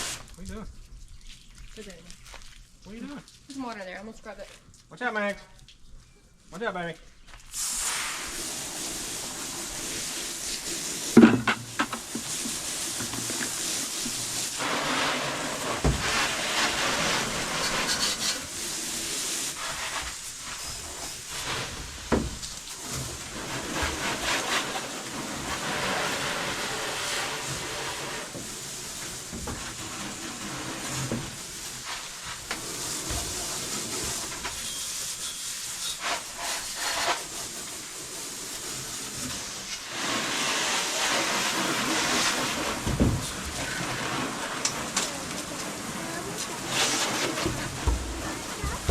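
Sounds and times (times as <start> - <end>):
water spraying on a car: 0.0 - 0.6, 7.4 - 48.9.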